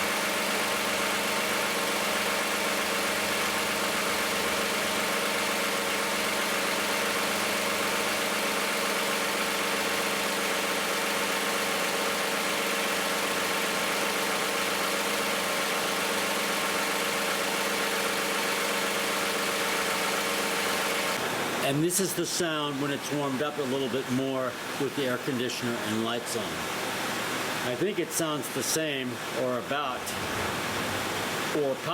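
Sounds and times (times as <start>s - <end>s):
car engine idling: 0.0s - 21.2s.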